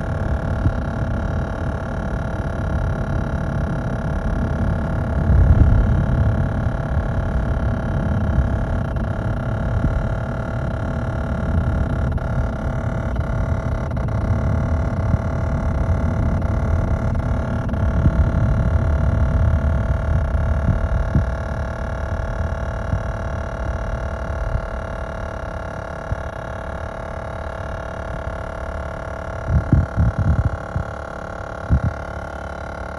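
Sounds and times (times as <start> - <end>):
low vehicle rumble: 0.0 - 32.9
steady whining tones: 0.0 - 32.9.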